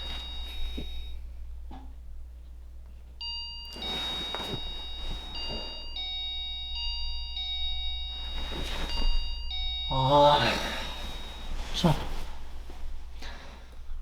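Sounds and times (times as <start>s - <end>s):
electronic ring tone melody: 3.2s - 11.2s.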